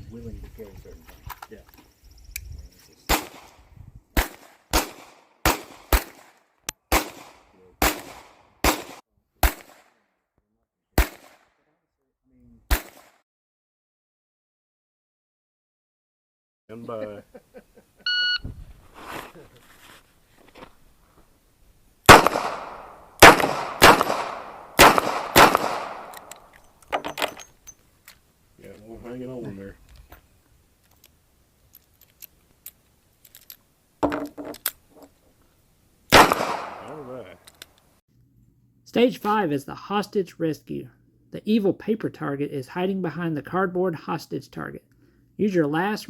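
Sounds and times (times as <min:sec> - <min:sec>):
handgun shots echoing: 0:03.1 - 0:03.5, 0:04.2 - 0:10.0, 0:11.0 - 0:11.5, 0:12.7 - 0:13.2, 0:22.1 - 0:26.5, 0:36.1 - 0:37.0.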